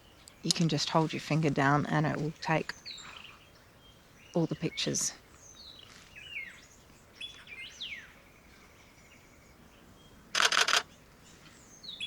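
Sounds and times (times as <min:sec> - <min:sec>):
birds whistling: 0:02.3 - 0:10.2, 0:11.3 - 0:12.0
camera shutter clicks: 0:10.4 - 0:10.9.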